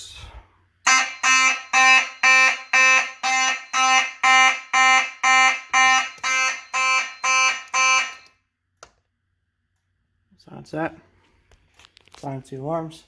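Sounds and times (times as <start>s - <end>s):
pulsing fire alarm horn: 0.8s - 8.4s.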